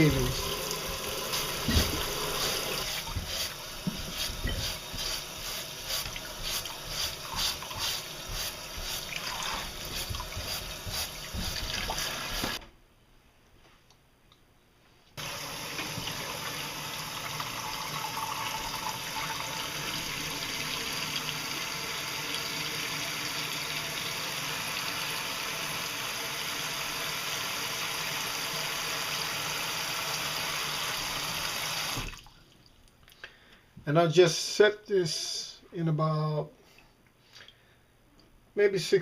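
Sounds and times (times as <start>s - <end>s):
water running from a tap: 0.0s - 12.6s, 15.2s - 32.3s.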